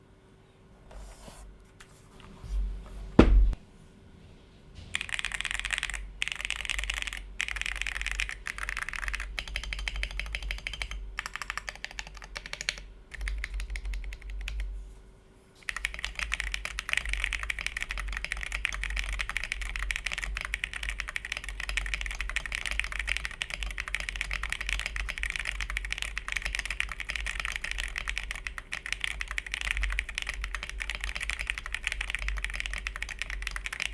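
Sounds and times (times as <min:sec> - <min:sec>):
loud knock: 0:03.2 - 0:03.6
typing on mechanical keyboard: 0:04.9 - 0:14.7, 0:15.6 - 0:33.9.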